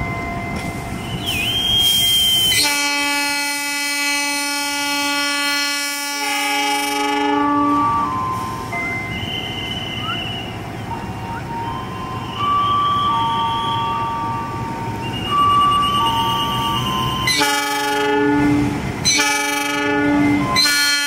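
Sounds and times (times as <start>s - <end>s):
moving train rumble: 0.0s - 21.0s
train horn blast: 2.4s - 8.2s, 17.2s - 21.0s.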